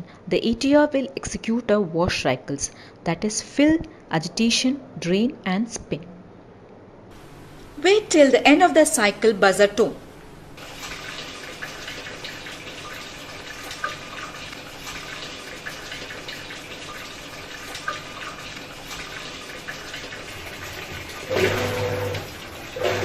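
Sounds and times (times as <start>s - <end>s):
water rushing into washing machine: 10.5s - 23.0s
small splashes: 10.6s - 23.0s.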